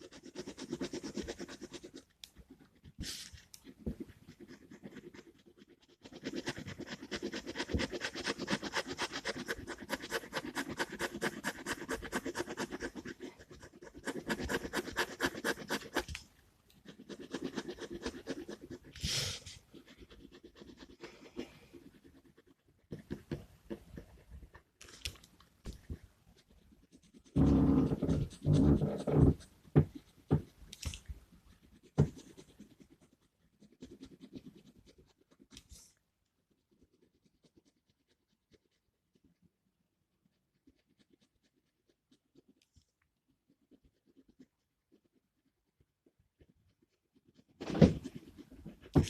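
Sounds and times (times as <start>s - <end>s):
pen scratching on paper: 0.0s - 49.0s.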